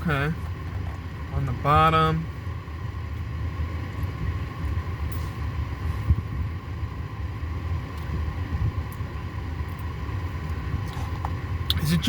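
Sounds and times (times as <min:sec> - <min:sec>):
low rumble: 0:02.2 - 0:11.7.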